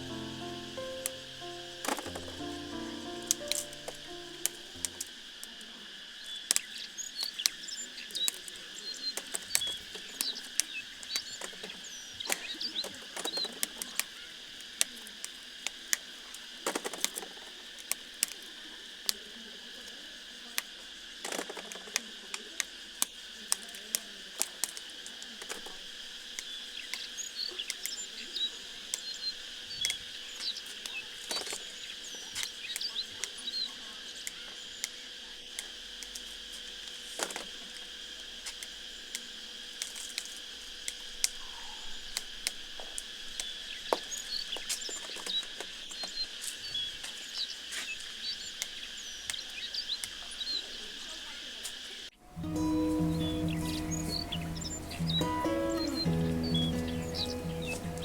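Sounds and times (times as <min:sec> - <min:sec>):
insect drone: 0:00.0 - 0:58.0
small birds chirping: 0:26.4 - 0:35.0, 0:43.4 - 0:51.1, 0:51.8 - 0:58.0.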